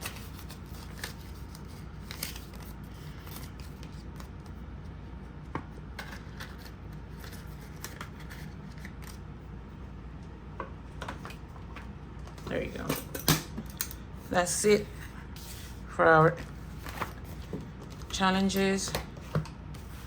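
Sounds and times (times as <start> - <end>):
paper banknotes rustling: 0.0 - 4.6, 5.9 - 9.3, 14.3 - 20.0
low background hum: 0.0 - 20.0.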